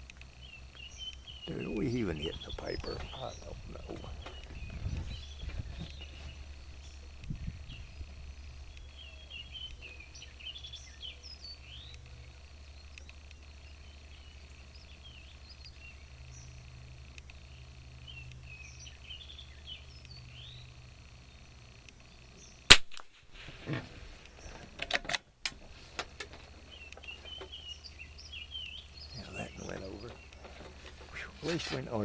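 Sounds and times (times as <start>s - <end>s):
birds chirping: 0.0s - 32.0s
rifle shot: 22.7s - 23.4s.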